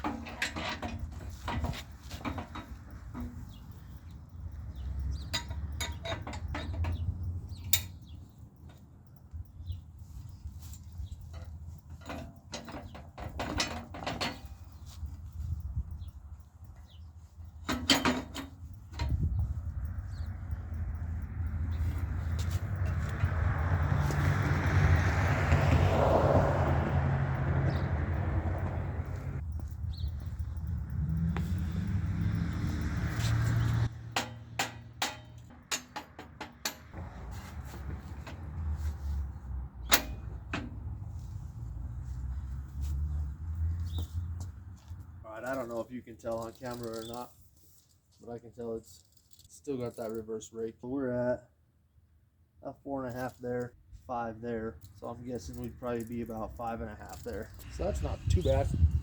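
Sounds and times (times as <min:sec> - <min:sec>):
metal clanks and scrapes: 0:00.0 - 0:03.9, 0:05.2 - 0:08.0, 0:10.6 - 0:15.1, 0:17.6 - 0:19.3, 0:21.7 - 0:24.9, 0:33.0 - 0:41.5
sharp knocks on steel: 0:34.0 - 0:37.0.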